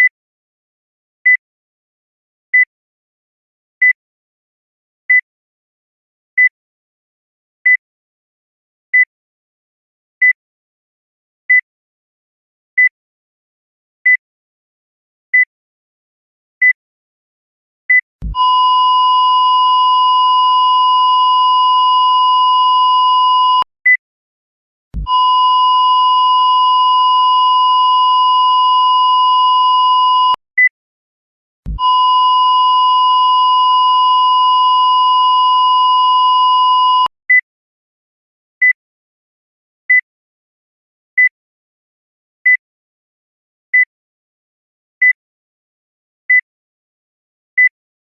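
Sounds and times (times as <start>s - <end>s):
short high beep: 18.3s - 23.7s, 25.0s - 30.4s, 31.8s - 37.4s.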